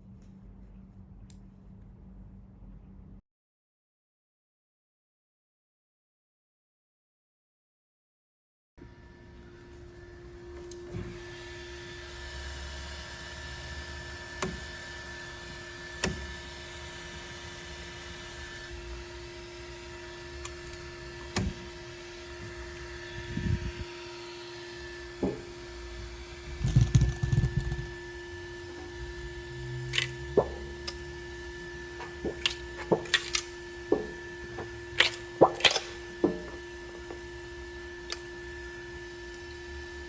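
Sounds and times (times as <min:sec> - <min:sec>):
steady motor hum: 0:08.8 - 0:40.0.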